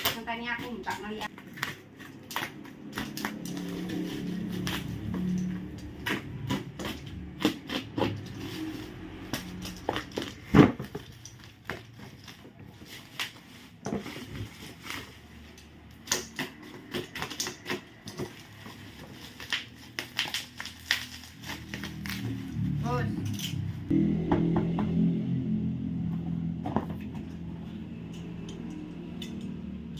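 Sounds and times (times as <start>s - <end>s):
packaging crinkling and scraping: 1.3s - 22.5s.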